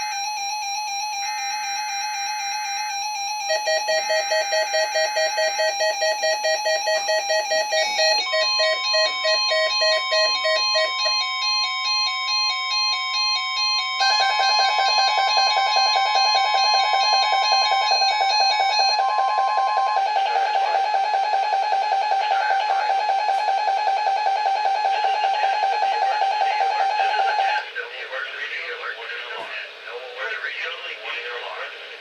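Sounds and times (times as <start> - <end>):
faster beeping alarm: 0.0 - 27.6
pulsing beeping alarm: 0.0 - 27.6
data bursts: 13.8 - 27.8
steady alert tone: 14.0 - 27.6.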